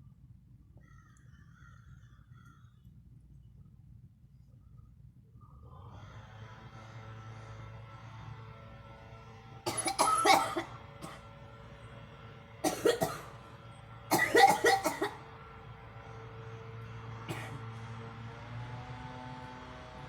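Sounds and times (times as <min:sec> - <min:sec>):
girl coughing: 0:09.7 - 0:11.2, 0:12.6 - 0:13.3, 0:14.1 - 0:15.2, 0:17.3 - 0:17.6.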